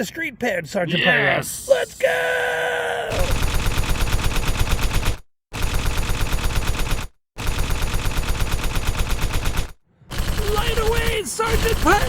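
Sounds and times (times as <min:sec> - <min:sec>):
rapid sharp cracks: 0:03.1 - 0:12.0.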